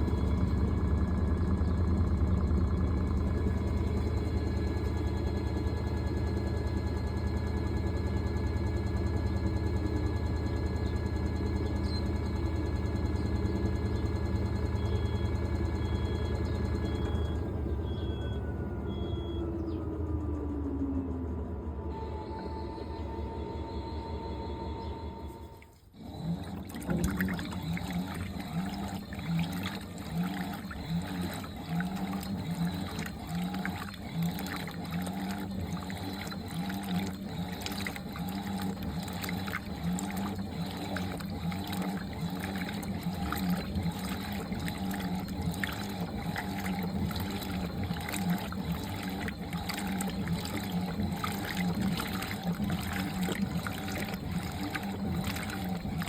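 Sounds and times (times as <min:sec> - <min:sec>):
washing machine running: 0:00.0 - 0:56.0
water swishing in tub: 0:25.4 - 0:56.0.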